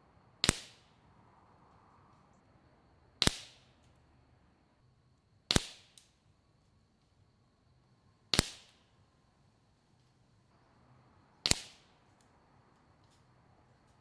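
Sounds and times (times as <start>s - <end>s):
air rifle shots: 0.4s - 0.9s, 3.2s - 3.7s, 5.5s - 6.0s, 8.3s - 8.8s, 11.4s - 11.9s.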